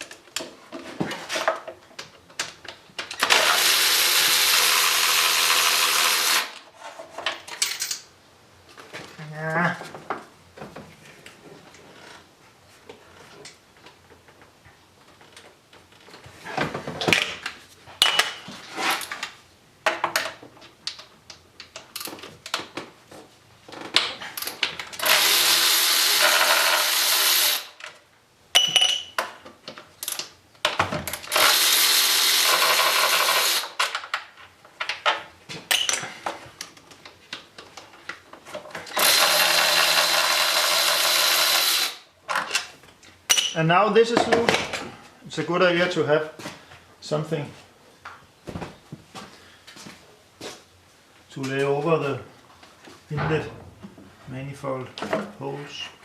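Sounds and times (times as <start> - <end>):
power driver spinning bolts: 24.4 - 27.8, 31.1 - 34.0, 38.8 - 42.0.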